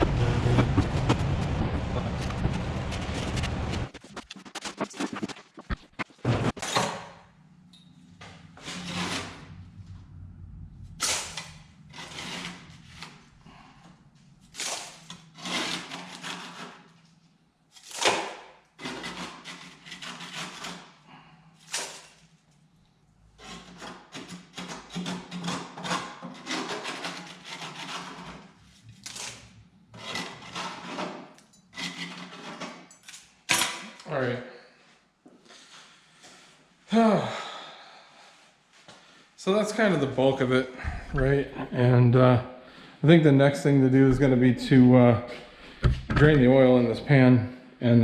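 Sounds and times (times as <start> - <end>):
scraping and rubbing on lathe: 8.2 - 10.3, 11.0 - 17.1, 18.8 - 21.0, 23.3 - 29.0, 29.9 - 32.9
knocks and clicks: 45.8 - 46.5.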